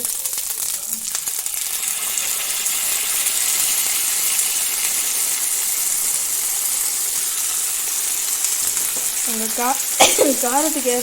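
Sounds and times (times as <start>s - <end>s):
paste sizzling in hot oil: 0.0s - 11.0s.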